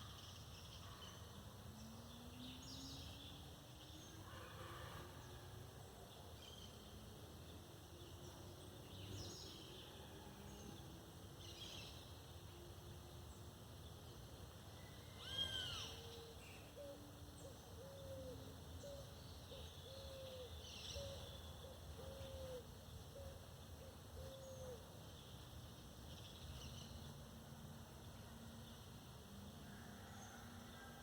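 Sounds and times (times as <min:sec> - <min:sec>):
faint high bird chirps: 0:14.8 - 0:16.3.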